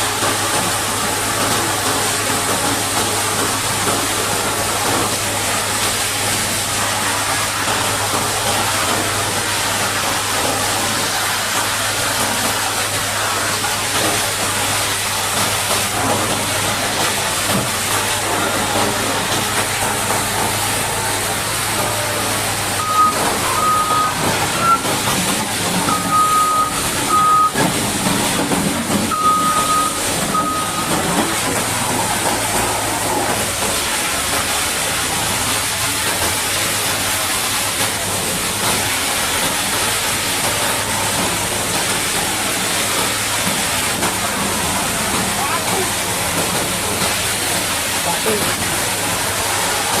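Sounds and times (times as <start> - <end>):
high-pressure water jet hissing: 0.0 - 50.0
reversing alarm beeping: 22.1 - 25.0, 25.8 - 27.7, 29.1 - 31.1.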